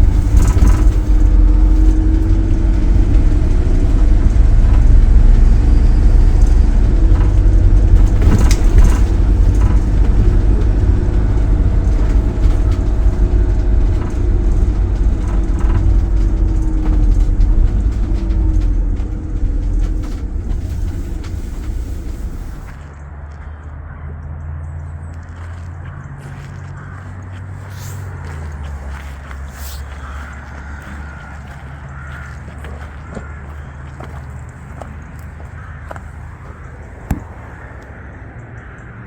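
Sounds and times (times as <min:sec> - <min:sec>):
engine and road rumble: 0:00.0 - 0:39.0.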